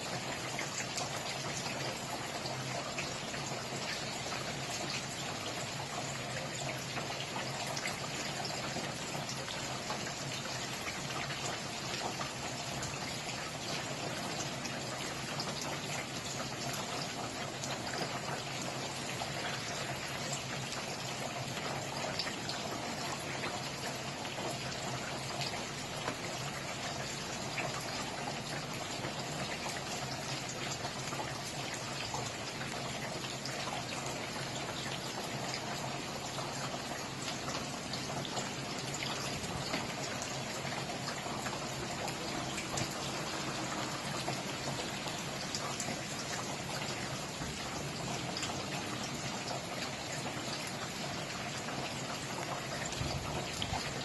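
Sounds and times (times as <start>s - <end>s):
steady rain pattering: 0.0s - 54.0s.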